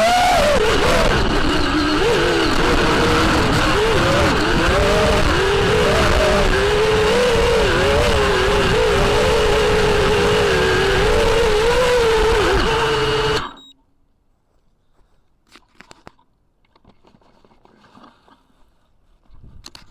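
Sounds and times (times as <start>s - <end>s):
drone propellers whining: 0.0s - 13.6s.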